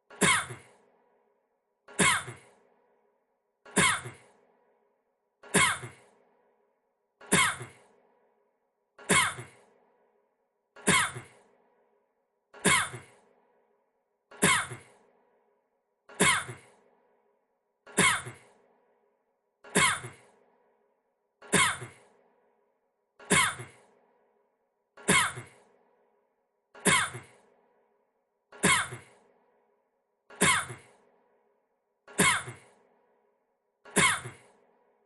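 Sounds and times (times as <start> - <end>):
man coughing: 28.6 - 29.1.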